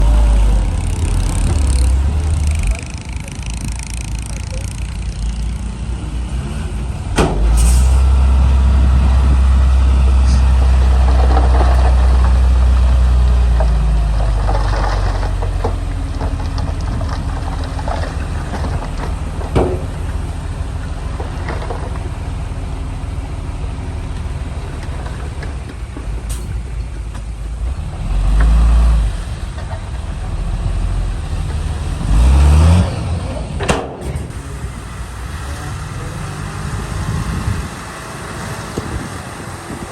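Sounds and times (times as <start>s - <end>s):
bulldozer diesel engine rumbling: 0.0s - 39.9s.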